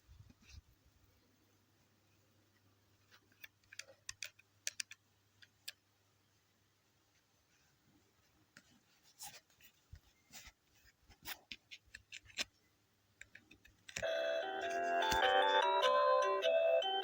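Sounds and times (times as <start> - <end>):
music with bright notes: 14.0 - 17.0.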